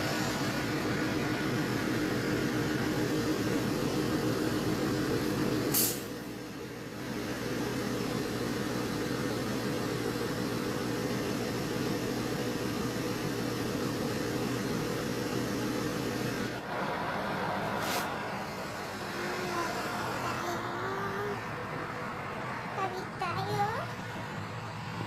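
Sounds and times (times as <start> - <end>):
steady motor hum: 0.0 - 25.0
brief hiss: 5.7 - 6.1, 17.7 - 18.2.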